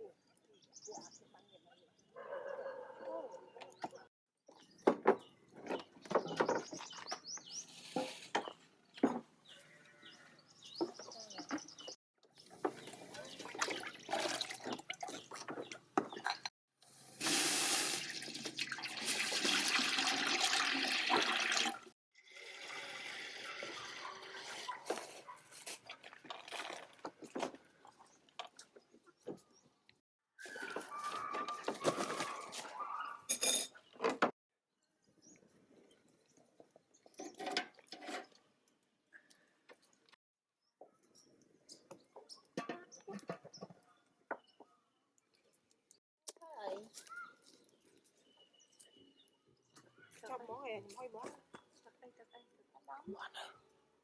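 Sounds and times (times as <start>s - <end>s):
knocks and clatter of handling: 4.7s - 7.3s
water pouring and splashing: 12.5s - 28.7s.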